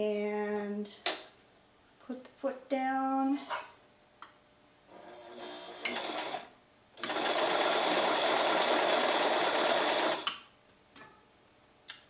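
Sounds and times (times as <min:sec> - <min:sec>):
sewing machine stitching: 0:05.0 - 0:10.3.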